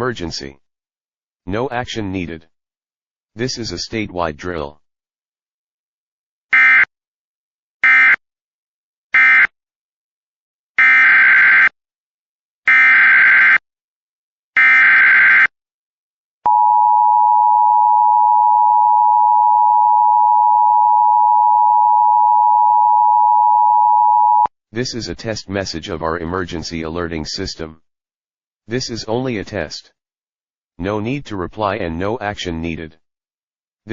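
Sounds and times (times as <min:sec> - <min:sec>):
two-tone attention signal: 0:16.5 - 0:24.5.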